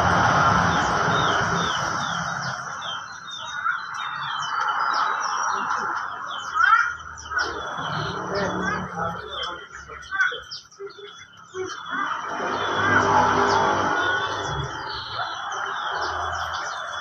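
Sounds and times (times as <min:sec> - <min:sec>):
steady rushing noise: 0:00.0 - 0:03.5, 0:12.1 - 0:17.0
small birds chirping: 0:00.0 - 0:17.0.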